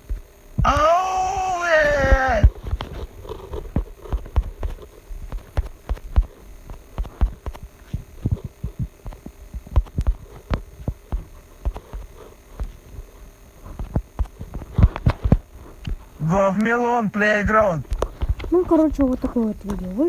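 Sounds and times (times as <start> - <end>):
faint hum: 0.0 - 20.0
phone handling thumps and clicks: 17.4 - 20.0.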